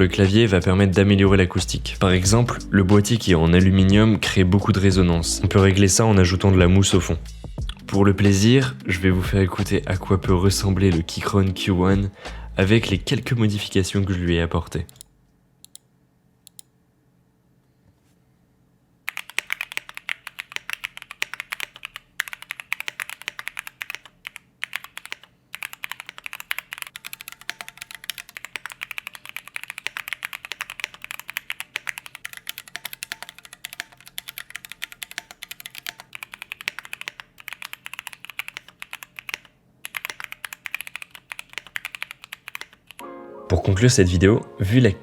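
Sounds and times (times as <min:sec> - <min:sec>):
mechanical keyboard typing: 0:19.1 - 0:43.0.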